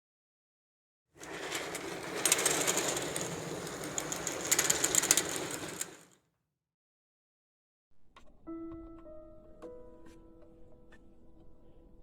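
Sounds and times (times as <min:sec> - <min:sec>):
sewing machine clatter: 0:01.2 - 0:06.2.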